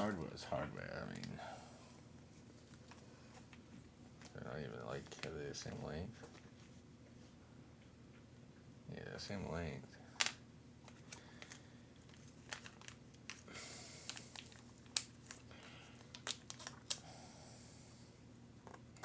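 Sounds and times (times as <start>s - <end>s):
plastic crinkling: 10.2s - 17.0s.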